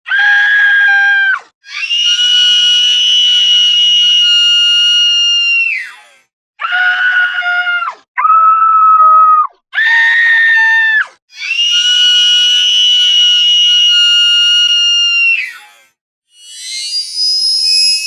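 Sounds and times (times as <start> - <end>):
high-pitched screams: 6.6 - 15.7, 16.3 - 18.0.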